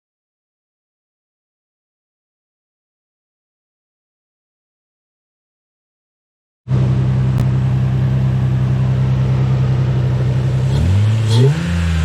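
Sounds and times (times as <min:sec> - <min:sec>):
car engine idling and revving: 0:06.7 - 0:12.0.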